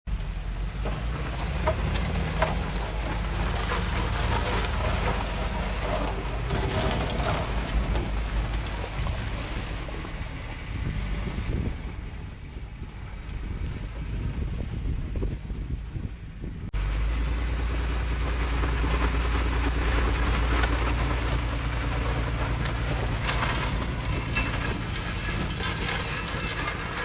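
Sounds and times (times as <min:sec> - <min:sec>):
diesel engine drone: 0:00.1 - 0:14.2, 0:16.4 - 0:27.0
metallic clanks: 0:03.8 - 0:10.2, 0:22.3 - 0:27.0
short squeaks: 0:04.4 - 0:10.3, 0:23.1 - 0:27.0.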